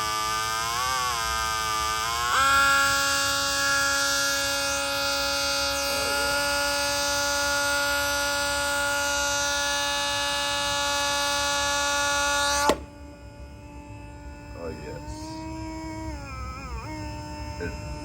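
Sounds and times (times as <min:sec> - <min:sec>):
harsh electronic siren tone: 0:00.0 - 0:18.0.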